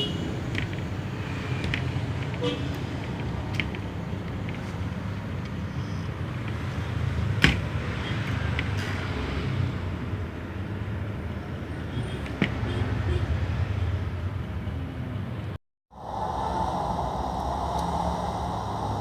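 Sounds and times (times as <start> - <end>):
low background rumble: 15.9 - 19.0.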